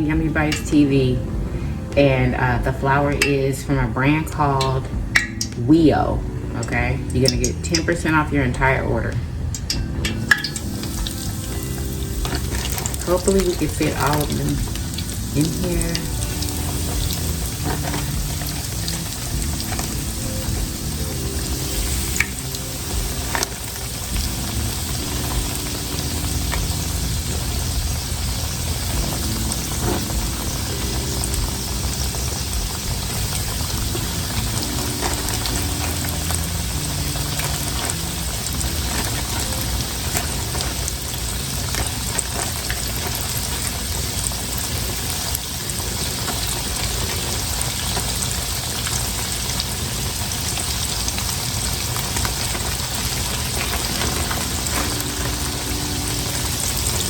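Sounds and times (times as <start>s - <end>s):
food sizzling in hot oil: 9.6s - 57.0s.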